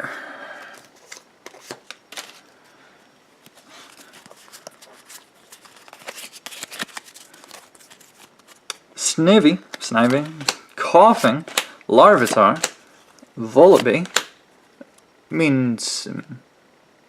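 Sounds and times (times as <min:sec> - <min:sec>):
trading cards flipped through: 0:00.8 - 0:02.4, 0:03.8 - 0:08.8, 0:09.7 - 0:14.4.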